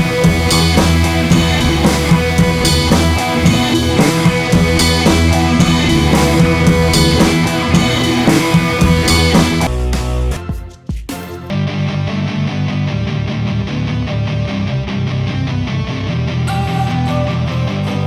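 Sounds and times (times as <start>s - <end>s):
drum kit steady beat: 0.0s - 11.4s
rock guitar: 0.0s - 18.0s.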